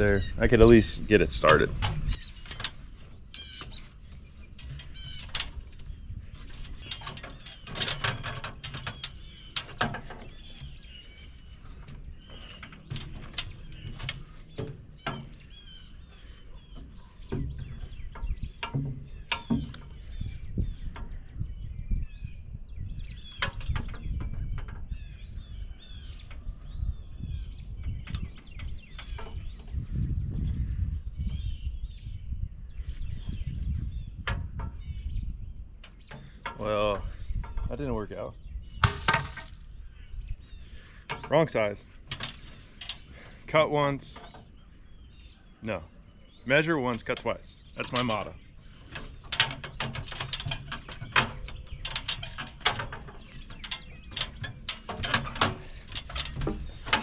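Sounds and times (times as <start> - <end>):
birds chirping: 0.0 - 57.0
sharp knocks and clatter: 1.4 - 20.2, 23.2 - 25.0, 38.8 - 39.8, 41.1 - 44.5, 46.8 - 57.0.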